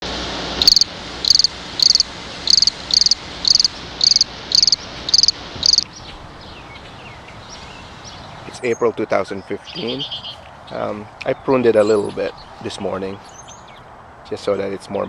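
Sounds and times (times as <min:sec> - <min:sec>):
cricket chirping: 0:00.6 - 0:05.9.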